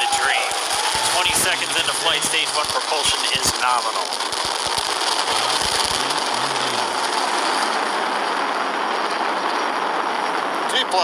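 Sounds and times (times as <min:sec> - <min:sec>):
rocket engines rushing: 0:00.0 - 0:11.0.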